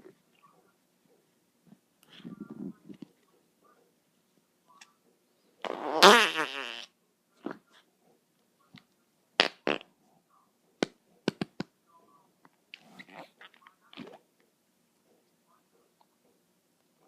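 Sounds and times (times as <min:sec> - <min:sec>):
loud wavering fart: 0:05.6 - 0:06.9.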